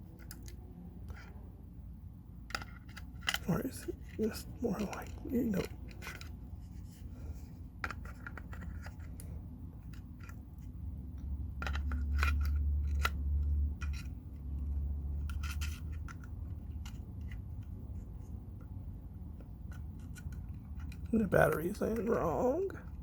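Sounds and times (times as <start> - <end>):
low rumble of handling noise: 0.0 - 23.0
plastic clicks and scrapes: 2.5 - 6.4, 7.8 - 10.7, 11.6 - 14.2, 15.2 - 17.8.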